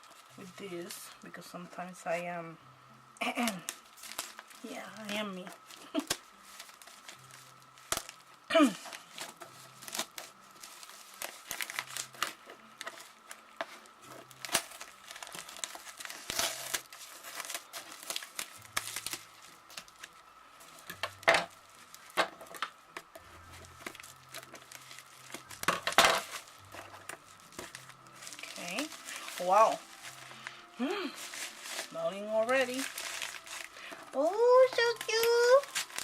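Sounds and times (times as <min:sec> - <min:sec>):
packaging crinkling and tearing: 0:03.2 - 0:36.0.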